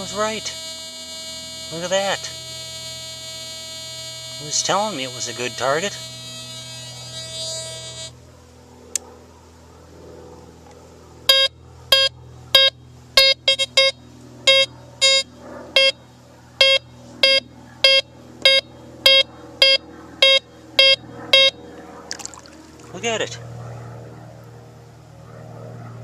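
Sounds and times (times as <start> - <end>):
metal detector beeping: 0.0 - 8.1, 11.3 - 16.0, 16.6 - 21.6
steady detector hum: 0.0 - 26.0.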